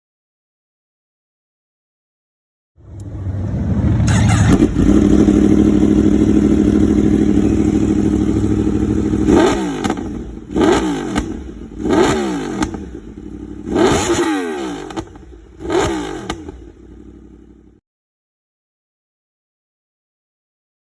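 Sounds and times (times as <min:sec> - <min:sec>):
motorcycle engine revving: 0:02.8 - 0:17.8.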